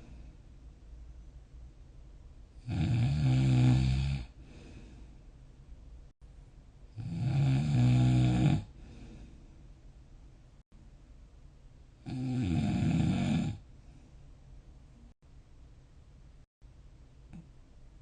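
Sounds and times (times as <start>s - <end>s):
soft breath: 0.0s - 1.3s, 4.3s - 5.6s, 8.7s - 10.0s, 13.7s - 14.4s
person snoring: 2.6s - 4.9s, 7.0s - 9.2s, 12.0s - 13.6s.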